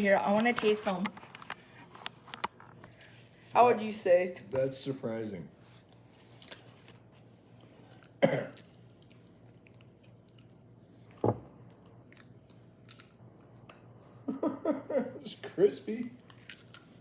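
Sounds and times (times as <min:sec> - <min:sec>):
crunching crispy chip: 0:12.8 - 0:13.8, 0:16.2 - 0:17.0.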